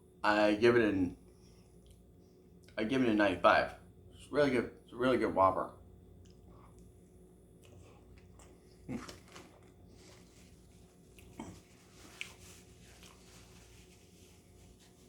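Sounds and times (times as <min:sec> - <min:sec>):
person chewing food: 0:07.6 - 0:13.6.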